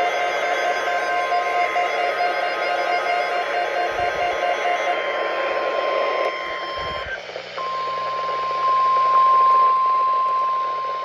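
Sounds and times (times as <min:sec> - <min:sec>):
radio static: 0:00.0 - 0:08.4
steady alarm tone: 0:00.0 - 0:11.0.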